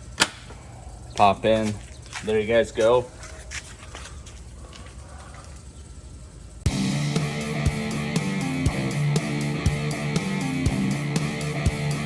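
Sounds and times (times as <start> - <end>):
distorted electric guitar: 6.7 - 12.0
rock drums: 6.7 - 12.0.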